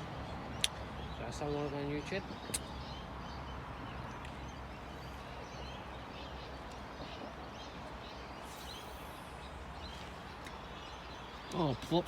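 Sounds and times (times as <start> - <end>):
outdoor background noise: 0.0 - 12.0
faint bird chirps: 0.5 - 12.0
soft hiss: 7.8 - 11.7.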